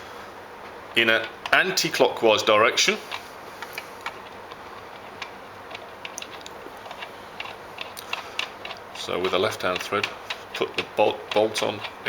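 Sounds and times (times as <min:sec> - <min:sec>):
metal parts clicking and tapping: 0:08.1 - 0:12.0.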